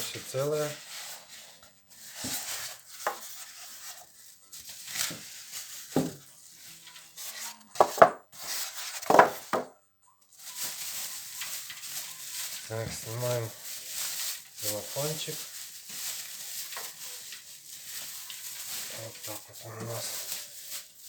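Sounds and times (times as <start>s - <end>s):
cardboard packaging rustling: 0.3s - 9.7s, 10.4s - 21.0s
knocks on box: 7.8s - 8.2s.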